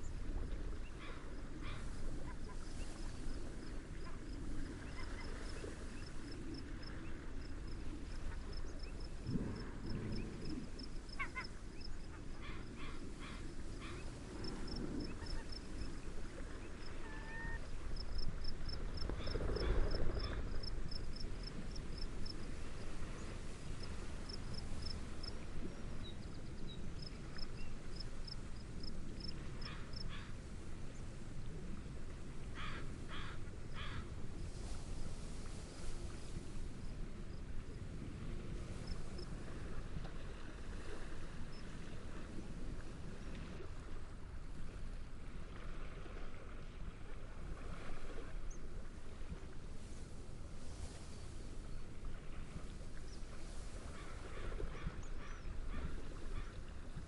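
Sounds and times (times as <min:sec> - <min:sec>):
gentle waves: 0:00.0 - 0:57.0
cricket chirping: 0:05.0 - 0:16.0, 0:16.8 - 0:22.7, 0:26.0 - 0:30.3
bird calls: 0:11.1 - 0:14.2.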